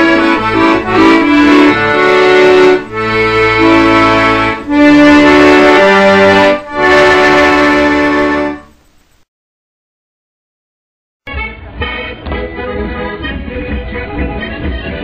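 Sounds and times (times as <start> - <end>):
sustained instrumental chords: 0.0 - 8.7.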